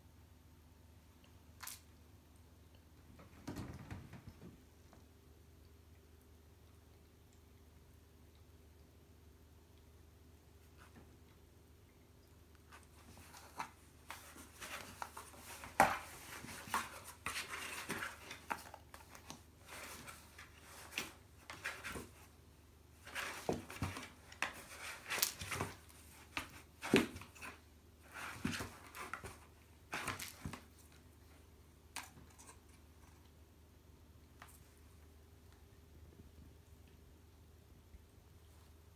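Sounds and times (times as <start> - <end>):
cat scratching cardboard box: 12.8 - 22.3, 23.0 - 30.8.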